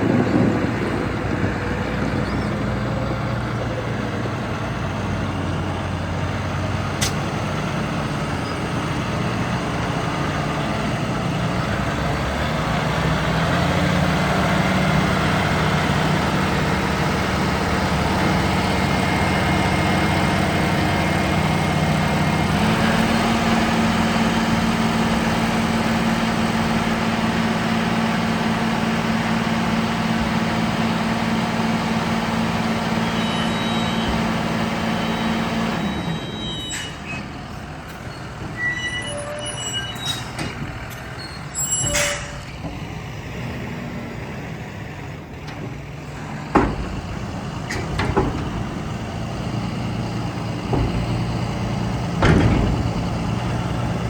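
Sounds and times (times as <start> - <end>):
heavy farm vehicle engine: 0.0 - 54.0
sharp click: 7.0 - 7.2.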